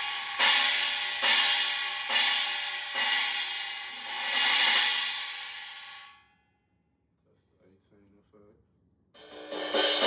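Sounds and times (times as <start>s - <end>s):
cymbal crashes: 0.0s - 6.1s, 9.2s - 10.0s.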